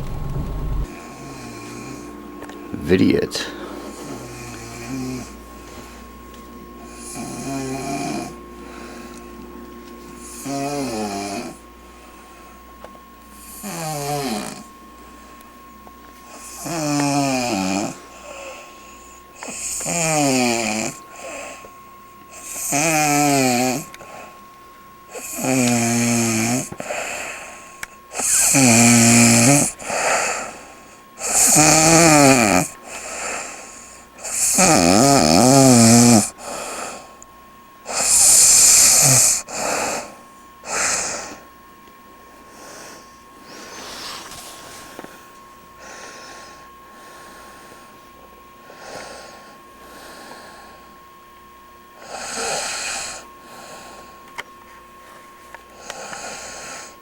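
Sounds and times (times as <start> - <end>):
woman snoring: 7.1 - 8.3, 13.6 - 14.6, 16.4 - 18.0, 19.6 - 21.0, 22.6 - 23.8, 25.2 - 26.7, 28.2 - 29.7, 31.2 - 33.4, 34.2 - 36.7, 37.9 - 40.0, 52.0 - 53.2.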